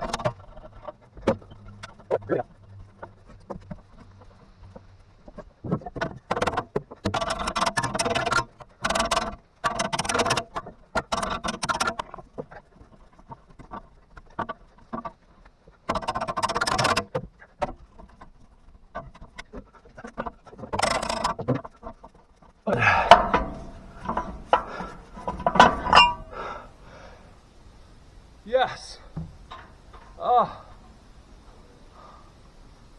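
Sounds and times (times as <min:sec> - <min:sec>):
metal tapping and scraping: 0:00.0 - 0:02.4, 0:04.8 - 0:15.2, 0:15.9 - 0:22.1, 0:22.7 - 0:27.3, 0:29.1 - 0:31.6.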